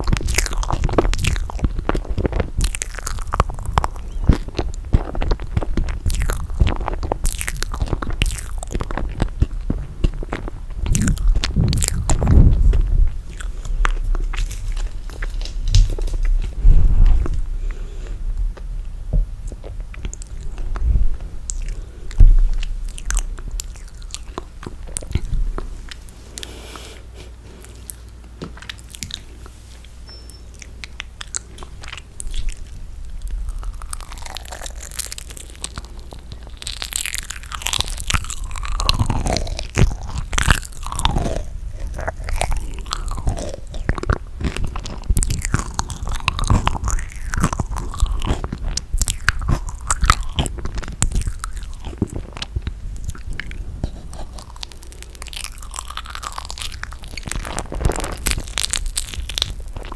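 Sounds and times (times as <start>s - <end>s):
mouth clicks: 0.0s - 16.4s
wet sticky chewing: 0.0s - 18.7s, 19.4s - 59.9s.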